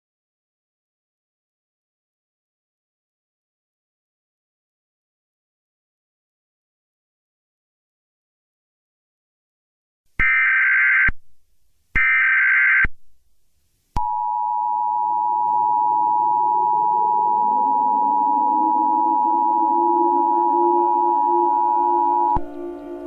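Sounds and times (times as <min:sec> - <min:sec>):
two-tone attention signal: 0:14.0 - 0:23.0
low rising tone: 0:16.9 - 0:23.0.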